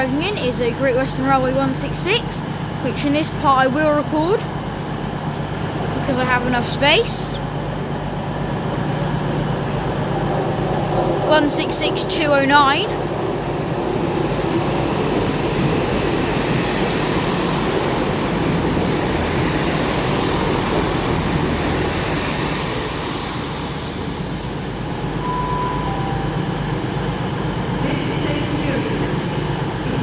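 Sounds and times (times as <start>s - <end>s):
diesel train engine rumble: 0.0s - 30.0s
train wheel noise: 0.0s - 30.0s
high hiss: 19.2s - 28.1s.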